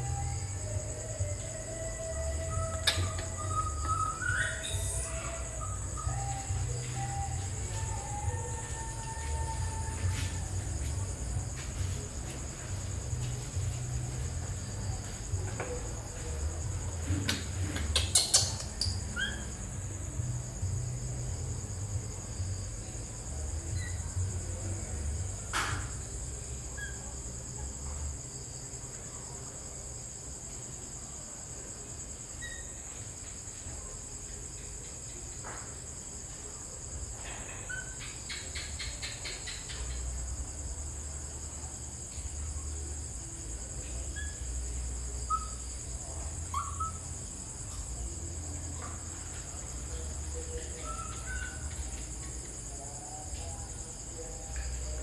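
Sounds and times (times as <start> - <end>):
insects droning: 0.0 - 55.0
bird chirps: 1.4 - 9.6, 17.8 - 19.6, 46.5 - 47.0, 50.5 - 51.9.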